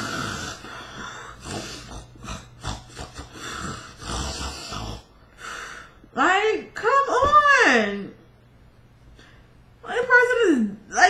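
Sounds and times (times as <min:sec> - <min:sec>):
woman imitating snoring: 0:00.0 - 0:05.2.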